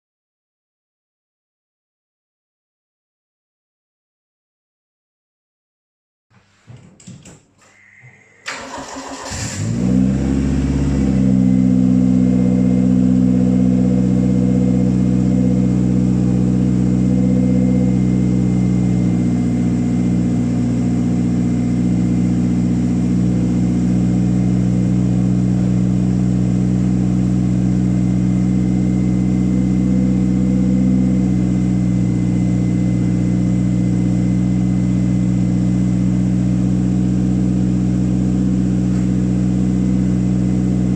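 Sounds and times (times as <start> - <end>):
car engine cranking and idling: 8.4 - 40.9.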